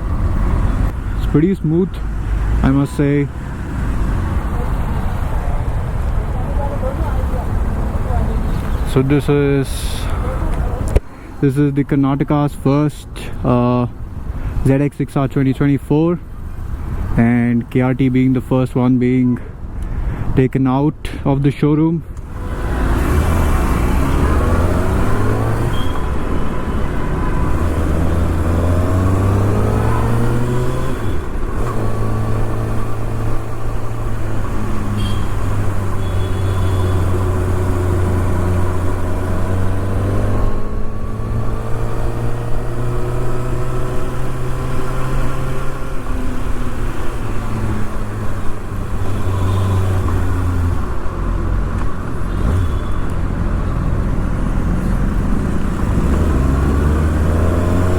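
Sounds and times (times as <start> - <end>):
traffic noise: 0.0 - 57.9
motorcycle engine: 22.2 - 57.9.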